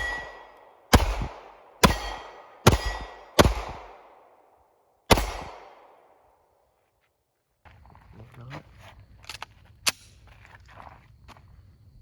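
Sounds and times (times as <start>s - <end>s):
pistol shots: 0.0s - 6.3s.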